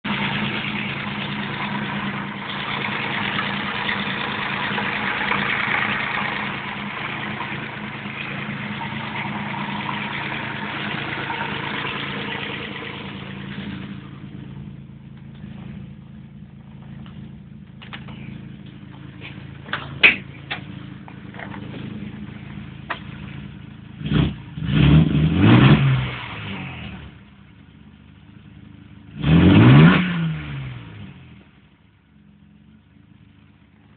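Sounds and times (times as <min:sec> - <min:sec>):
engine revving: 0:00.0 - 0:14.7, 0:21.5 - 0:27.2, 0:29.1 - 0:31.4
car engine idling: 0:00.0 - 0:29.4, 0:30.8 - 0:33.9.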